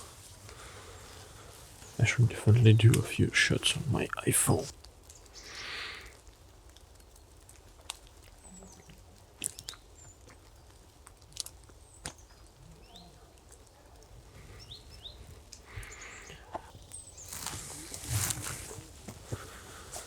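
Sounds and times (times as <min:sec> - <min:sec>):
small birds chirping: 0:00.0 - 0:06.2, 0:08.2 - 0:20.0
sharp clicks and crunches: 0:06.2 - 0:08.3, 0:09.4 - 0:12.3, 0:16.5 - 0:19.7.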